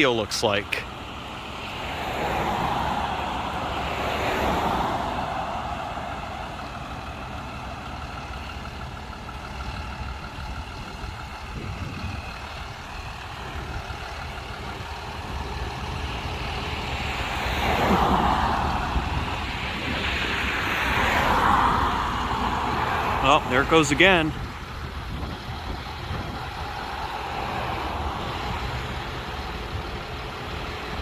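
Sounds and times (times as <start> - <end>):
vehicle passing: 0.0 - 8.6, 13.1 - 31.0
low engine rumble: 0.0 - 31.0.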